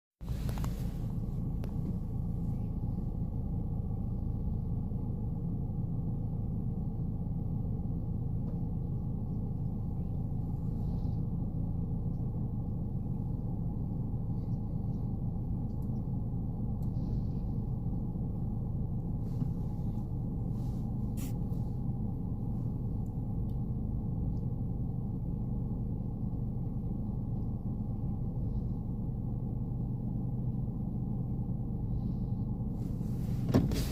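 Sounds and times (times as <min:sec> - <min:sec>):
low engine-like rumble: 0:00.2 - 0:33.9.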